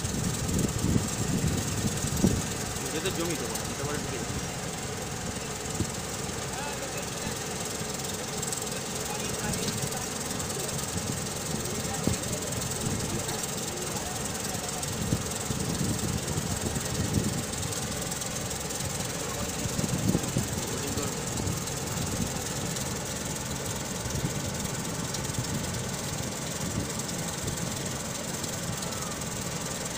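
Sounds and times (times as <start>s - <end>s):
combine harvester running: 0.0s - 29.9s.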